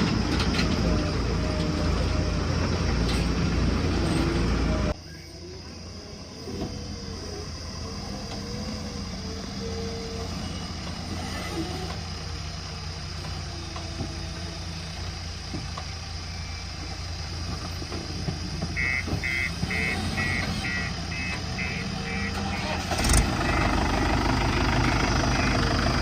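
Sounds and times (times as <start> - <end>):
backhoe diesel engine running: 0.0 - 26.0
alarm beeping: 18.8 - 26.0.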